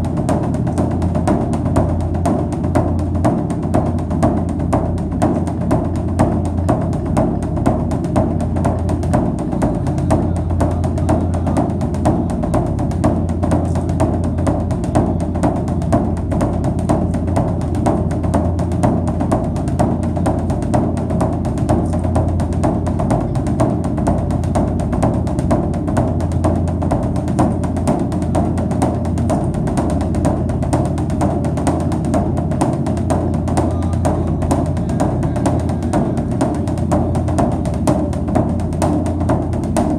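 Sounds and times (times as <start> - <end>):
music with drums and percussion: 0.0 - 39.9.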